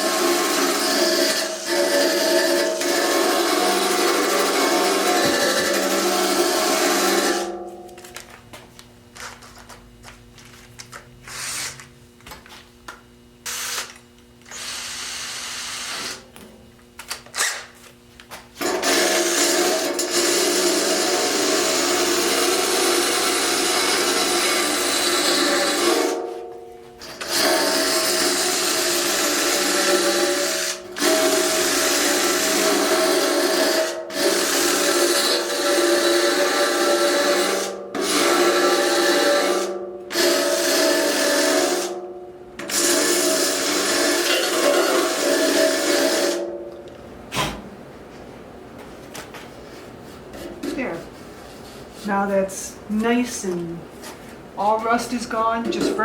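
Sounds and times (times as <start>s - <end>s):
rotary power tool grinding metal: 0.0s - 7.6s, 18.6s - 26.2s, 27.0s - 42.0s, 42.6s - 46.4s.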